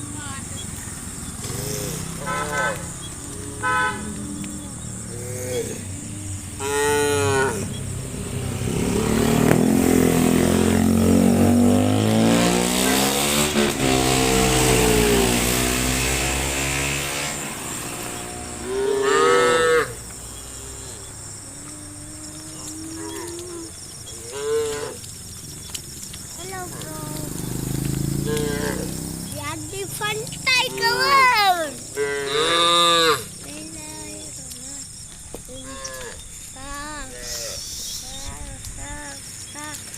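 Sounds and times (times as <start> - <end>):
cattle mooing: 1.4 - 7.8, 17.2 - 20.9, 21.6 - 25.1, 27.7 - 29.0, 30.6 - 33.3, 35.6 - 36.2.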